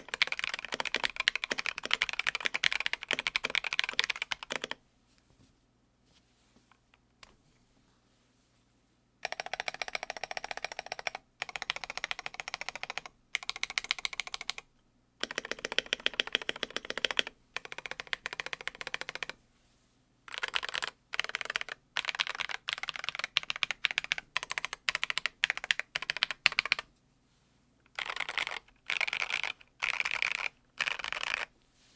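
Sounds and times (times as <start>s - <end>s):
keyboard typing: 0.0s - 4.8s, 9.2s - 19.4s, 20.3s - 26.9s, 27.9s - 31.5s.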